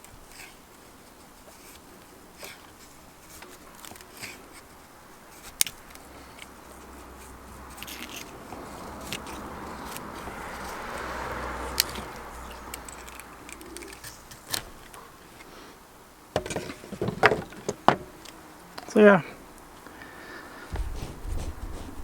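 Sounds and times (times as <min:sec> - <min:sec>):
knife shaving wood: 0:00.0 - 0:15.7
small clicks: 0:11.7 - 0:15.5.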